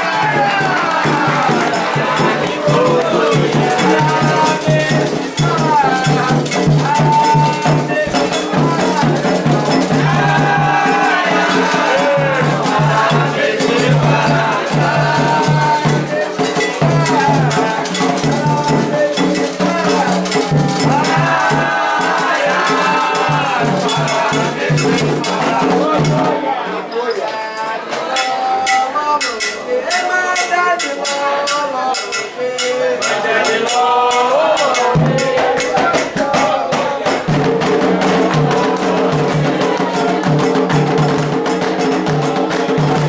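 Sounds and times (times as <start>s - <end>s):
drums: 0.0s - 26.6s, 27.9s - 43.0s
voices chanting: 0.0s - 43.0s.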